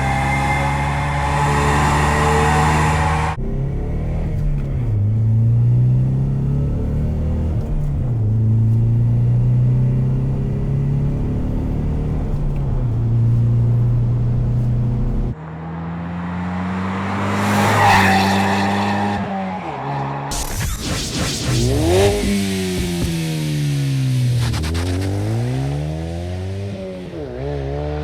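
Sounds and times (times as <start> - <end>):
car engine revving: 0.0 - 28.0
loud hiss: 20.3 - 26.0.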